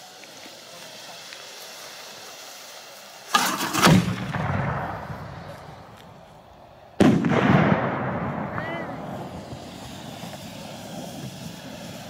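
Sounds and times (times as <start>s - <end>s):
quick crackling: 0.0s - 6.8s
firework shells booming: 3.2s - 12.0s
rolling echo: 3.4s - 10.9s.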